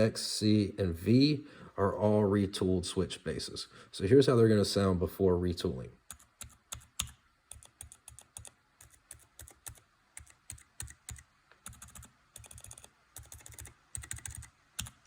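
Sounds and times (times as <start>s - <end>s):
muted mechanical keyboard typing: 6.1s - 15.0s.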